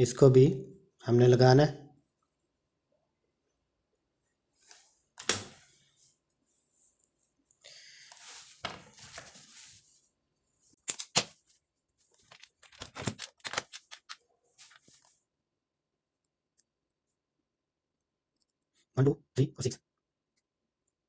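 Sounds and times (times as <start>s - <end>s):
cable wires rustling: 4.6s - 15.2s.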